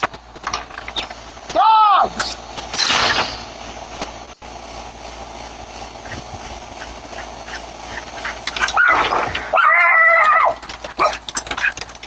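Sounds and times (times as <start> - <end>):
outdoor background hiss: 0.0 - 12.0
dog whining: 8.6 - 11.8.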